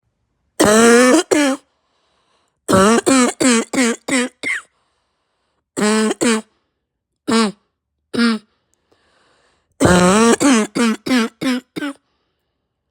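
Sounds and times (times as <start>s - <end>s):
person coughing harshly: 0.6s - 1.6s, 2.7s - 4.7s, 5.8s - 6.5s, 8.2s - 8.5s, 9.8s - 12.0s.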